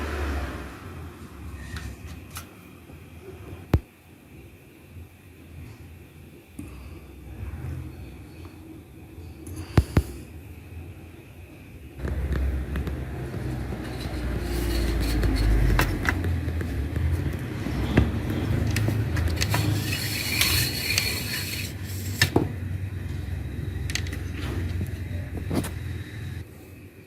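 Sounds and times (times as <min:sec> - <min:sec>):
scraping: 0:12.0 - 0:22.5.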